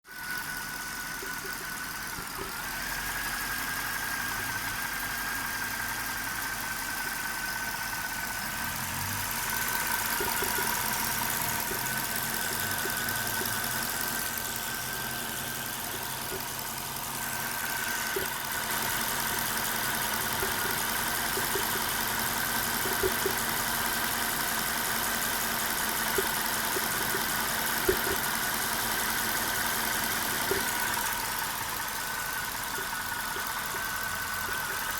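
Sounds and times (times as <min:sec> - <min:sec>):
car engine idling: 0:00.1 - 0:34.9.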